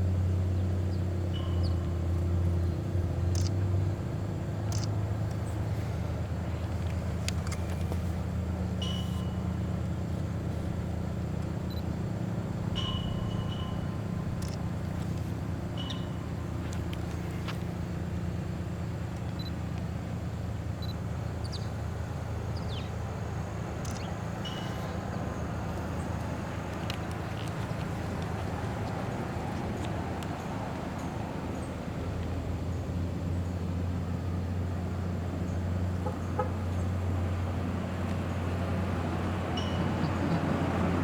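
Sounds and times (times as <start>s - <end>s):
vehicle engine rumbling: 0.0s - 41.0s
scattered clicks: 3.2s - 3.8s, 4.6s - 5.5s, 12.8s - 17.8s, 23.8s - 25.0s.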